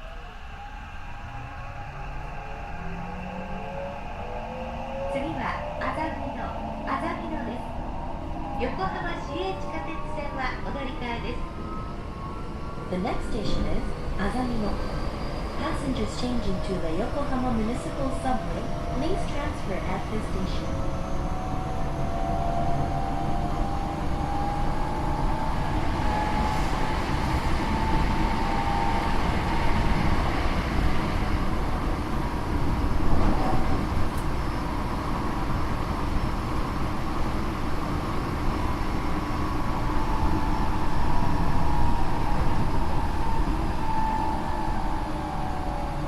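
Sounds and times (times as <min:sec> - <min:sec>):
train wheels rumbling on rail: 0:13.0 - 0:46.0.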